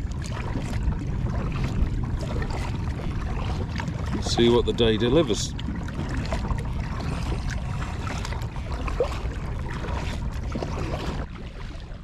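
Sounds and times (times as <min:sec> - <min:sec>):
low rumble: 0:00.0 - 0:12.0
paddle splashing water: 0:00.0 - 0:12.0.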